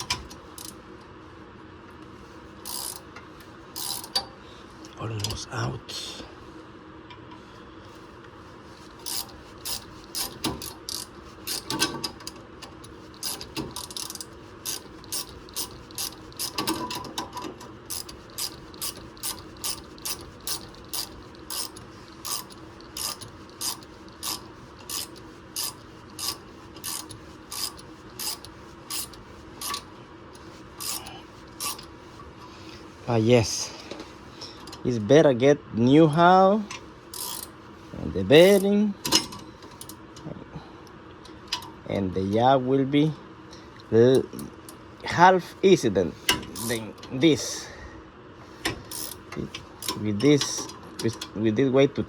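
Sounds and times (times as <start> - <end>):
ratchet wrench clicking: 0.0 - 0.8, 2.6 - 3.0, 3.7 - 4.3, 9.0 - 31.9, 37.1 - 37.5, 38.4 - 40.0, 46.3 - 46.9, 48.7 - 51.3.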